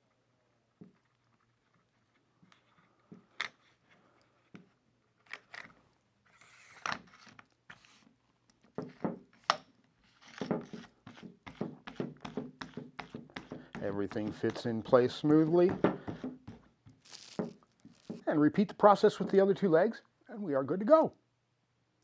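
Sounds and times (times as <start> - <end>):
tripod leg sliding scrapes: 6.3 - 8.1, 9.4 - 18.2.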